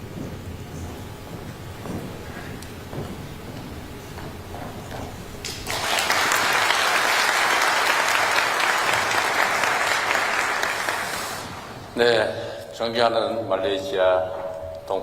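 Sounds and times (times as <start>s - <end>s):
audience clapping: 5.4s - 11.8s.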